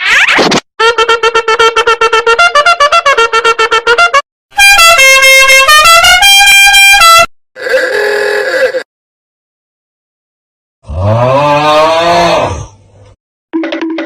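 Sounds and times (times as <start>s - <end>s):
horn tune of held notes: 0.8s - 7.3s
short tooting horn notes: 0.8s - 7.3s.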